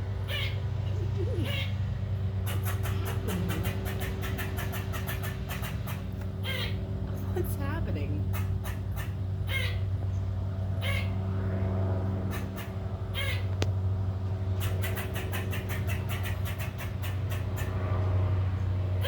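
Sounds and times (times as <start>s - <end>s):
steady low hum: 0.0s - 19.0s
squirrel alarm calls: 0.1s - 7.3s, 8.2s - 11.2s, 12.3s - 13.7s, 14.6s - 17.8s
squirrel clicking chatter: 2.4s - 6.8s, 8.3s - 9.8s, 12.3s - 13.6s, 14.6s - 17.8s.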